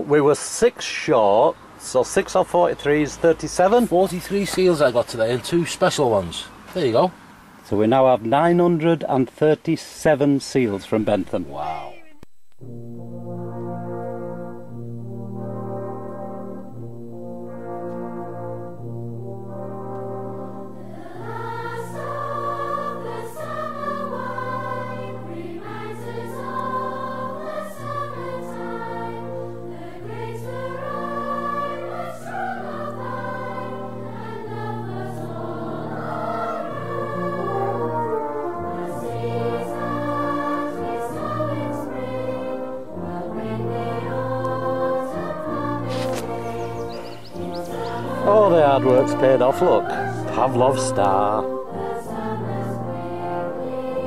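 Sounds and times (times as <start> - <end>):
orchestra with brass: 12.6 - 54.0
choir singing: 19.3 - 54.0.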